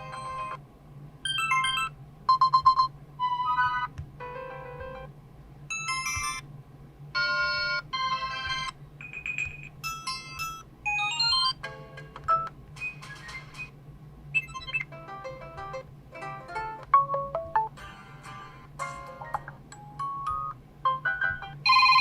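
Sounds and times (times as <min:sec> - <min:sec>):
electronic ringtone melodies: 0:05.7 - 0:06.4, 0:07.2 - 0:13.7, 0:14.4 - 0:18.1, 0:18.8 - 0:22.0.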